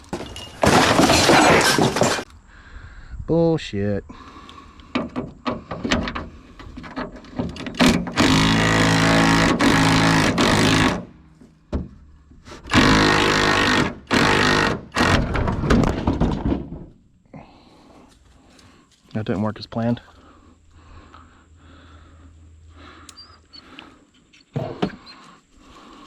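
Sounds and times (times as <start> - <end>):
metal tools clanking: 0.0 - 2.3, 5.0 - 8.2
power tool buzzing rattle: 7.6 - 11.2, 12.7 - 15.6.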